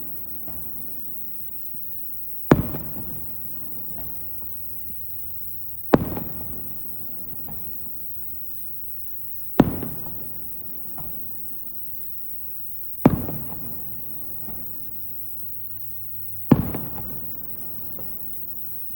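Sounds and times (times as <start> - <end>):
firework booms: 0.0 - 4.9, 5.9 - 8.6, 9.5 - 12.1, 13.0 - 15.4, 16.4 - 18.9.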